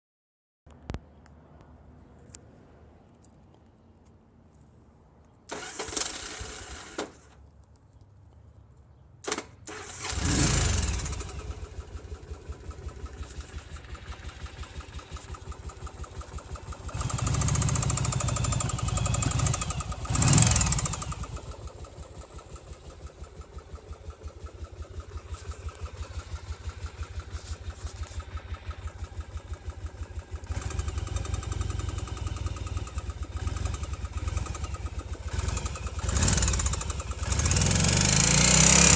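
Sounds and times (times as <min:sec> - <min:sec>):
motorcycle engine starter cranking: 0:05.5 - 0:07.4, 0:09.2 - 0:37.6
motorcycle engine revving and idling: 0:09.7 - 0:38.9
engine knock: 0:10.3 - 0:38.9.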